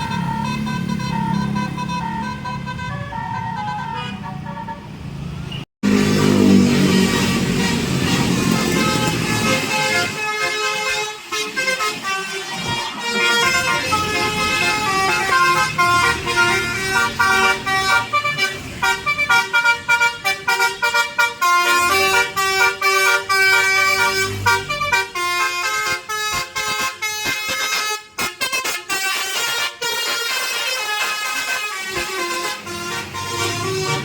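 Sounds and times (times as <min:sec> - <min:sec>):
musical air horn tune: 0:00.0 - 0:04.9, 0:05.8 - 0:34.0
bus engine running: 0:00.0 - 0:34.0.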